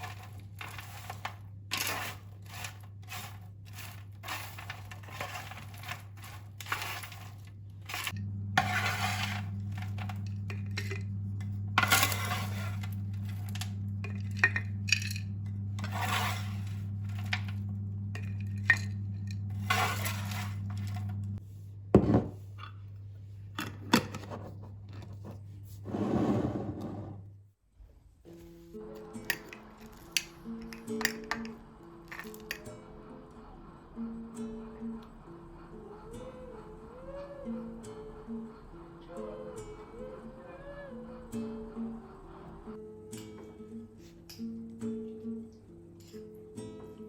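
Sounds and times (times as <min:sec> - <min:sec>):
dishes and utensils clinking: 0:00.0 - 0:21.2, 0:28.8 - 0:32.7
low electrical hum: 0:00.0 - 0:42.8.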